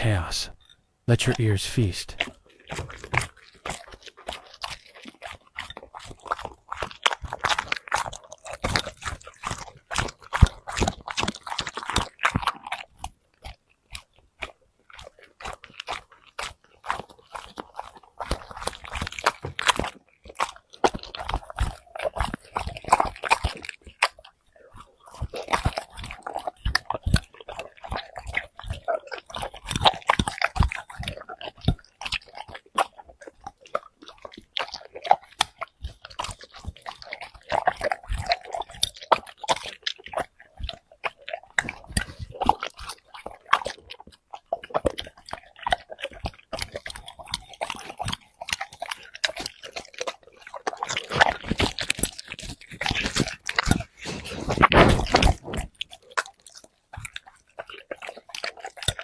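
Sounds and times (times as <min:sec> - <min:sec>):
dog crunching and chewing: 0:00.2 - 0:59.0.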